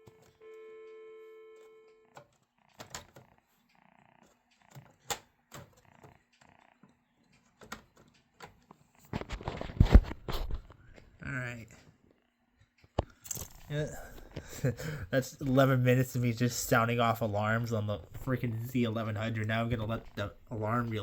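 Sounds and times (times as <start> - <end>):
alarm buzzing tone: 0.0 - 4.8
small clicks: 0.0 - 11.0.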